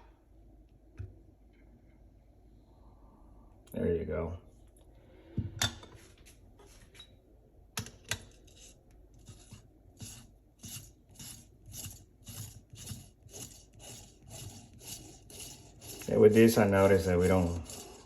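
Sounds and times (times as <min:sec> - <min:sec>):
tool scraping ground coffee: 0:08.3 - 0:18.0.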